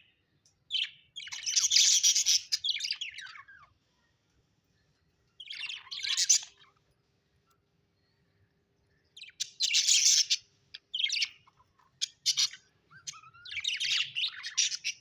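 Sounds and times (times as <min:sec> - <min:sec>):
budgerigars chirping and chattering: 0:00.7 - 0:03.7, 0:05.4 - 0:06.8, 0:09.1 - 0:15.0.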